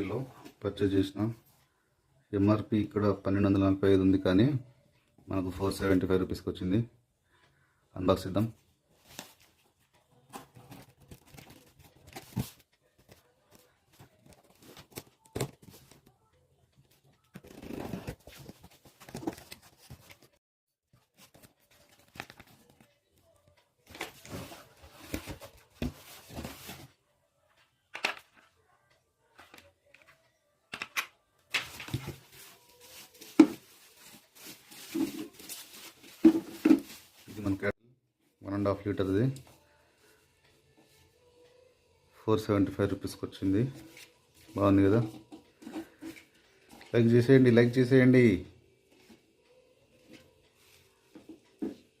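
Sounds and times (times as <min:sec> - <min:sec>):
cardboard rustling and tearing: 0:17.4 - 0:20.4.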